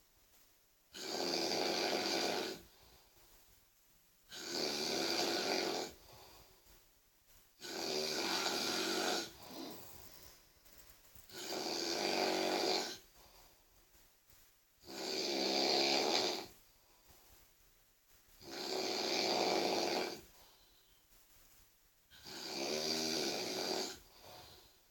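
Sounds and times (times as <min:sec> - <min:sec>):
very loud snoring: 0:00.9 - 0:02.7, 0:04.3 - 0:06.0, 0:07.6 - 0:09.8, 0:11.3 - 0:13.1, 0:14.8 - 0:16.5, 0:18.4 - 0:20.3, 0:22.1 - 0:24.6
quiet breathing: 0:02.3 - 0:03.7, 0:05.1 - 0:15.0, 0:15.8 - 0:24.9.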